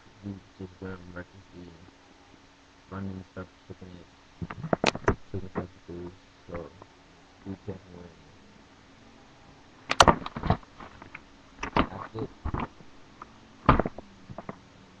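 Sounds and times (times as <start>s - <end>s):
knocks and clattering thumps: 9.9s - 12.8s, 13.6s - 14.6s.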